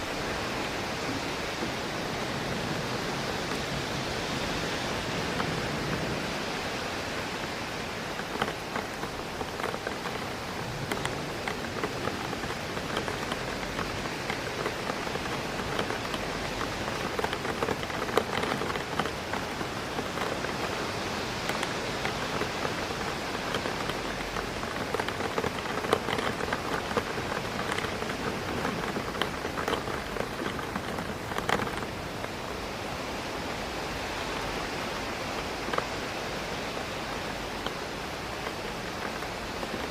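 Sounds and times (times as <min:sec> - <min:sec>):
rain hitting a window: 0:00.0 - 0:39.9.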